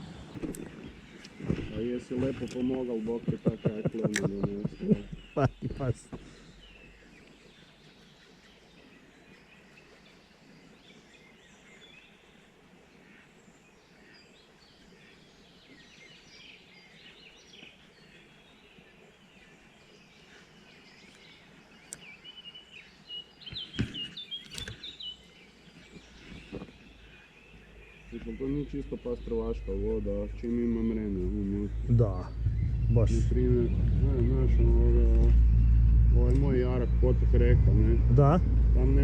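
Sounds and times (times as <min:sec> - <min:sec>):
small birds chirping: 0:00.0 - 0:39.0
sharp click: 0:24.4 - 0:24.9.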